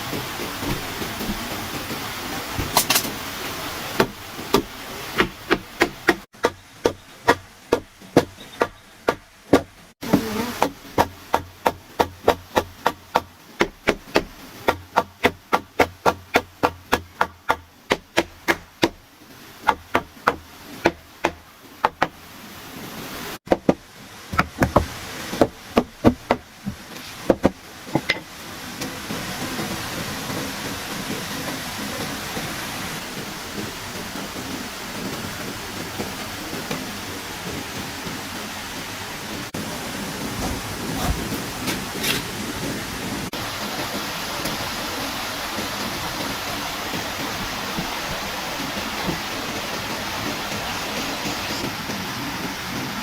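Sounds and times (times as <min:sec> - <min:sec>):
hammering on wood: 0:04.0 - 0:22.2, 0:23.5 - 0:28.3.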